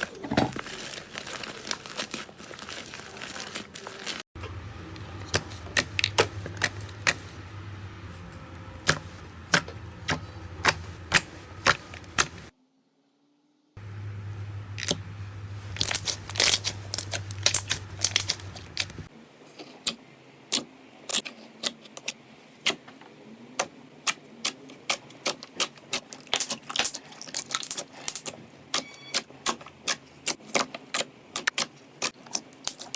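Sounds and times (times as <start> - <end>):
low hum: 4.4 - 19.1
slime popping and crackling: 15.6 - 19.1, 24.4 - 28.8, 32.3 - 32.9.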